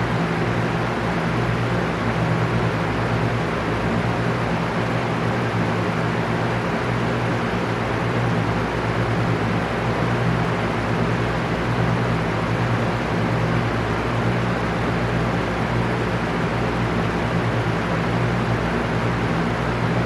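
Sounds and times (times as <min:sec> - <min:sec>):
electric fan running: 0:00.0 - 0:20.0.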